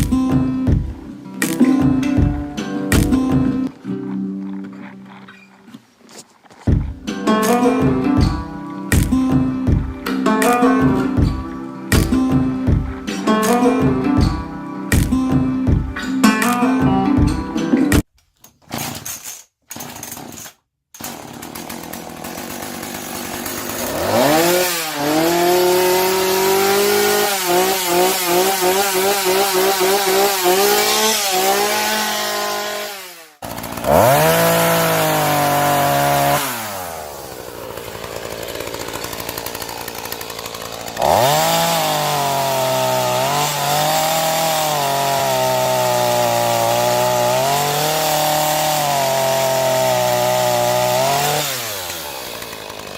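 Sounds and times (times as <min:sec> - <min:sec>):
chainsaw engine revving: 0:21.0 - 0:52.9.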